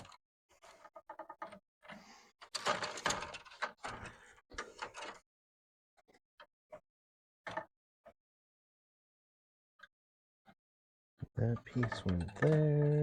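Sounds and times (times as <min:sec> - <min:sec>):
parts scraping and knocking: 0:00.0 - 0:05.2, 0:11.4 - 0:13.0.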